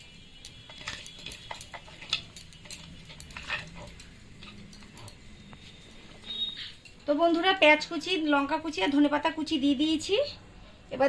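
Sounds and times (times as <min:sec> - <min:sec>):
kitchen utensils clicking: 0:00.7 - 0:05.3.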